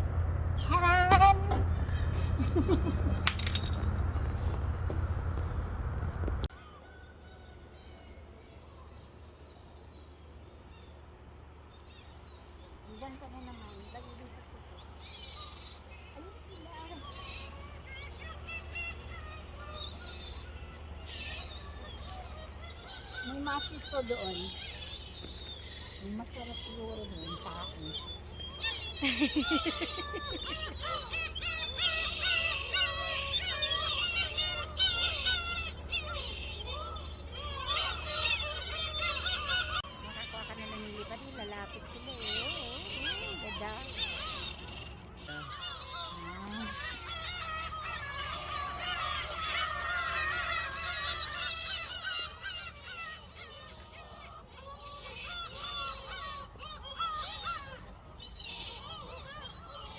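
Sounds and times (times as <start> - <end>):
steady low hum: 0.0 - 6.5
seagulls calling: 0.0 - 10.0, 11.7 - 59.9.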